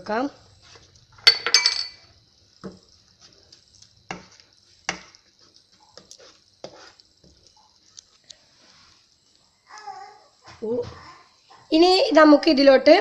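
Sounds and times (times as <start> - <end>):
faint steady hiss: 0.0 - 13.0
spoon knocking and scraping in pan: 0.6 - 8.1.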